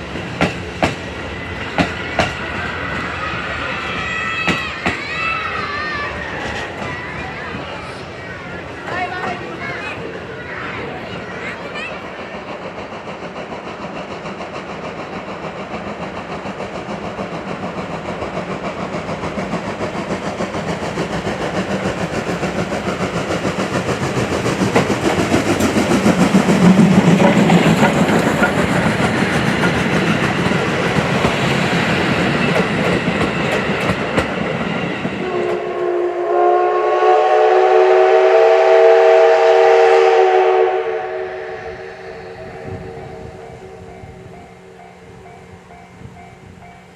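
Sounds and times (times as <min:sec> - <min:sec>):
steam locomotive chuffing: 0:00.0 - 0:46.9
chime steam whistle: 0:35.2 - 0:46.9.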